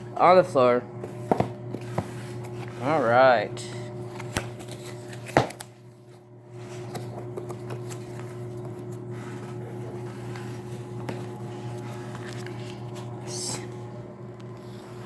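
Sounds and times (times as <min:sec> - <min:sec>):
low machine hum: 0:00.0 - 0:15.0
package being handled and opened: 0:03.9 - 0:13.2.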